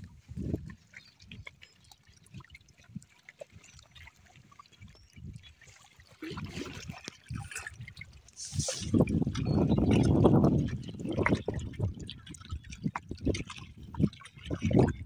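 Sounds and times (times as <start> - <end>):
wind buffeting microphone: 0.0 - 1.5, 6.3 - 15.0
small waves lapping at shore: 0.0 - 10.1.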